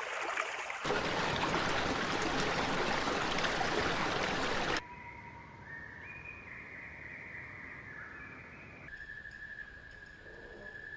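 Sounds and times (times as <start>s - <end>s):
rushing stream water: 0.0s - 4.8s
bird whistling: 4.9s - 10.1s.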